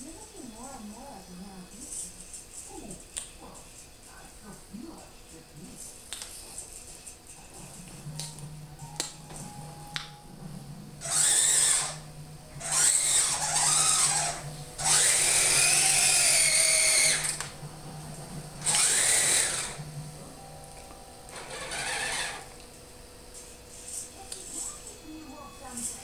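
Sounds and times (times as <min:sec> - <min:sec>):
steady low hum: 0:00.0 - 0:26.0
electric motors whirring: 0:06.8 - 0:26.0.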